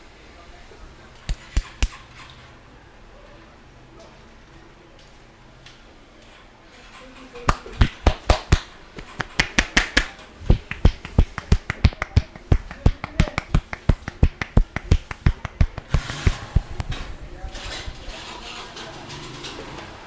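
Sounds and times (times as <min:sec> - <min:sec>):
hands smacking in percussive massage: 0:01.3 - 0:02.0, 0:07.5 - 0:17.1.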